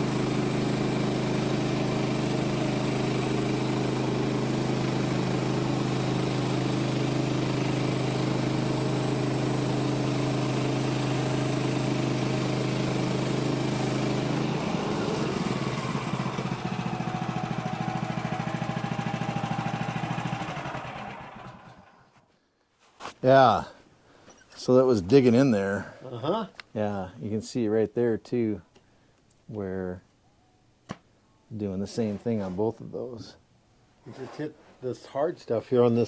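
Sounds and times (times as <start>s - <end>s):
sawmill engine running: 0.0s - 22.0s.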